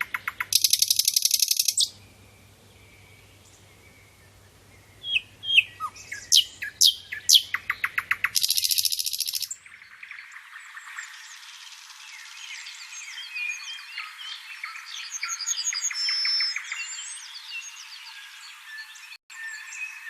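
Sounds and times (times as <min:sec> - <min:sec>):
fast rattling bird trill: 0:00.0 - 0:02.0, 0:05.1 - 0:09.6
many birds chirping: 0:00.0 - 0:20.0
sharp down-slurred bird chirps: 0:00.0 - 0:20.0.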